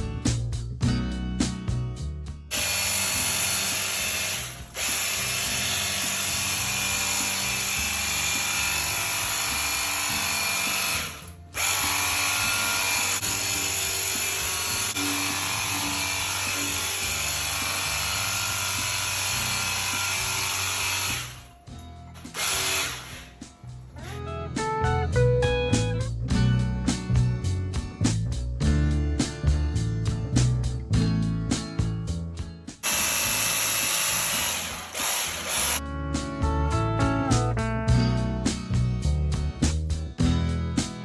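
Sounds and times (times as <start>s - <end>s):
pressure washer motor drone: 2.5s - 21.5s, 22.2s - 23.3s, 32.8s - 35.8s.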